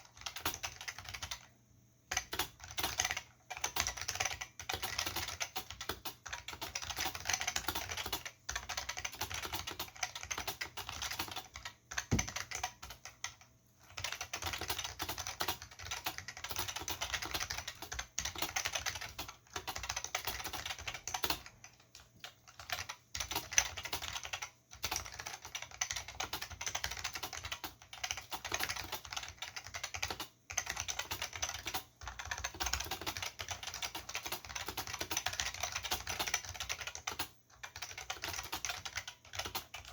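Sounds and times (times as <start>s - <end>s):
mechanical keyboard typing clicks: 0.0s - 1.5s, 2.1s - 39.9s.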